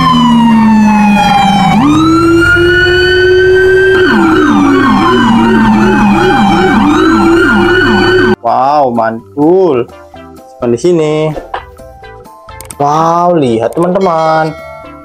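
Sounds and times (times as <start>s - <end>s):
police siren wailing: 0.0s - 8.4s
police siren yelping: 0.0s - 8.4s.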